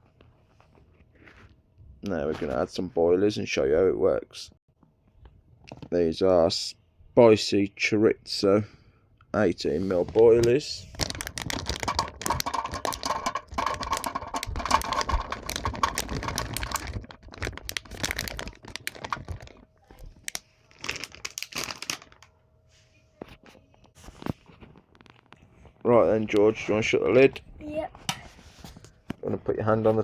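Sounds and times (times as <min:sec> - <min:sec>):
hard balls clattering into a bowl: 0:11.4 - 0:17.7.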